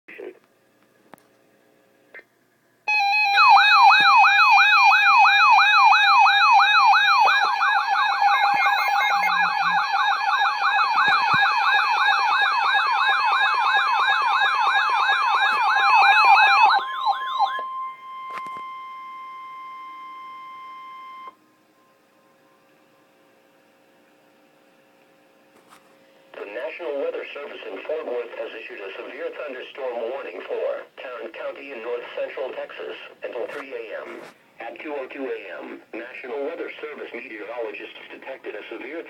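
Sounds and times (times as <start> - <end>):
emergency alert siren warble: 2.9 - 23.2
steady alert tone: 7.0 - 11.0.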